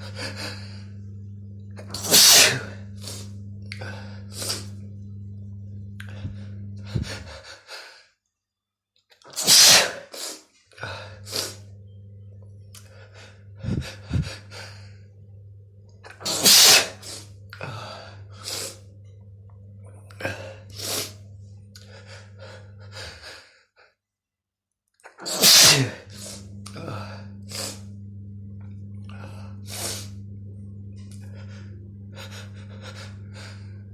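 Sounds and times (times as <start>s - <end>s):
faint low hum: 0.0s - 7.5s, 10.8s - 23.3s, 25.6s - 33.9s
person sneezing: 1.8s - 3.3s, 9.3s - 10.4s, 16.2s - 17.3s, 25.2s - 27.8s
gasping in-breaths: 10.7s - 11.7s, 12.7s - 15.1s, 16.9s - 18.9s, 20.1s - 24.0s, 25.8s - 27.9s, 31.1s - 33.9s.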